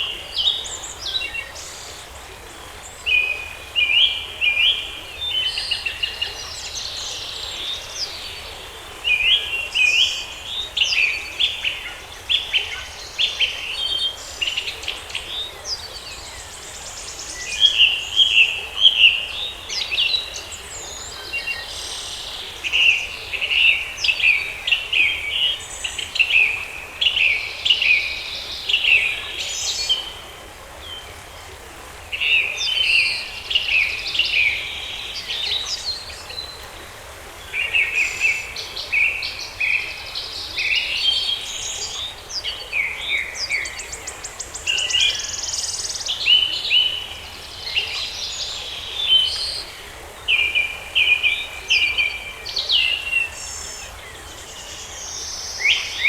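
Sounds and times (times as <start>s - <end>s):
faint steady hiss: 0.0s - 56.0s
songbirds chirping and whistling: 32.2s - 56.0s.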